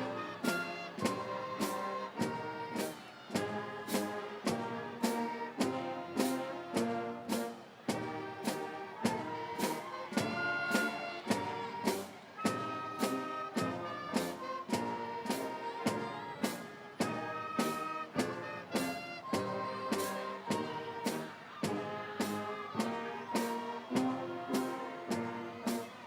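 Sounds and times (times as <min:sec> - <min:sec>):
instrumental music with steady beat: 0:00.0 - 0:26.0.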